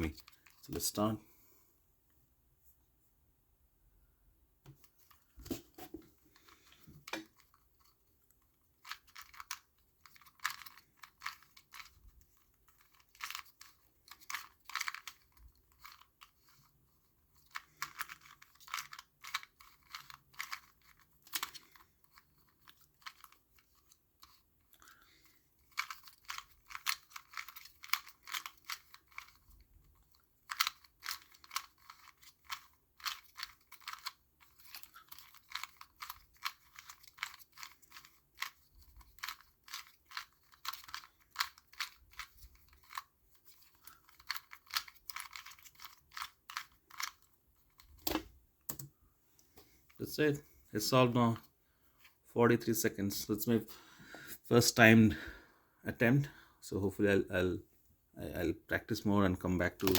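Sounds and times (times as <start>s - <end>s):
puzzle cube clicking and rattling: 0.0s - 0.6s, 6.3s - 48.8s.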